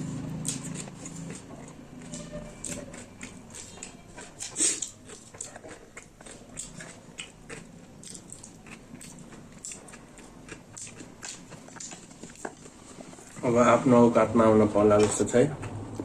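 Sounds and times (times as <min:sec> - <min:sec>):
chewing and biting: 0:00.0 - 0:13.5.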